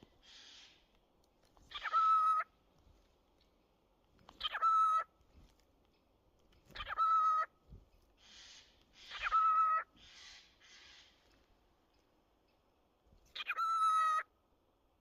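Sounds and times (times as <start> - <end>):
soft breathy hissing: 8.2 - 9.1
cockatiel whistling call: 8.3 - 10.4.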